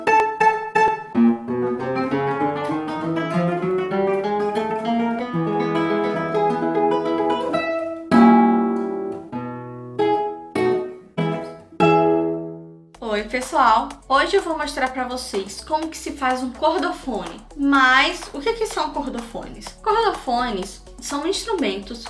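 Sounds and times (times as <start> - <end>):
acoustic guitar fingerpicking: 0.0 - 12.9
acoustic guitar strummed chords: 0.0 - 12.9.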